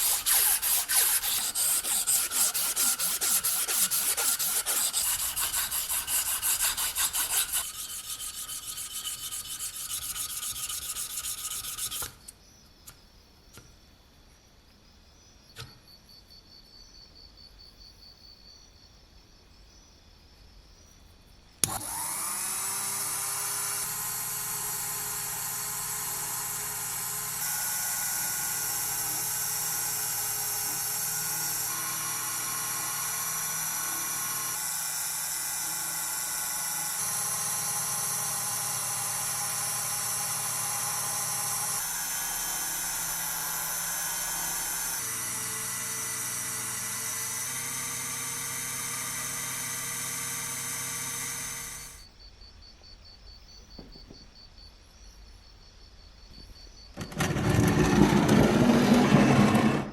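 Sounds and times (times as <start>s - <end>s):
rotary tool motor whining: 0.0s - 12.2s, 21.6s - 52.1s, 57.0s - 59.9s.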